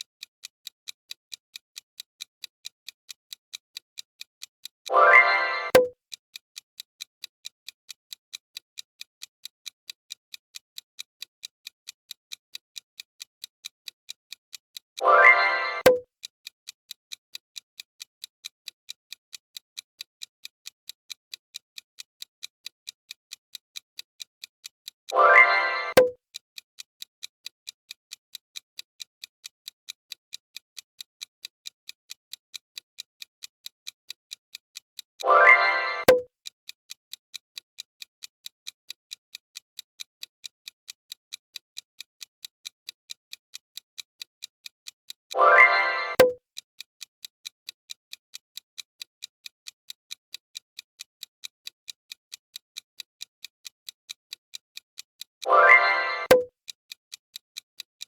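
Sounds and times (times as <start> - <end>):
sharp click: 4.9 - 5.9, 15.0 - 16.0, 25.1 - 26.2, 35.3 - 36.3, 55.5 - 56.5
countdown clock ticking: 4.9 - 6.0, 15.0 - 16.1, 25.1 - 26.2, 35.2 - 36.3, 45.3 - 46.4, 53.0 - 56.5.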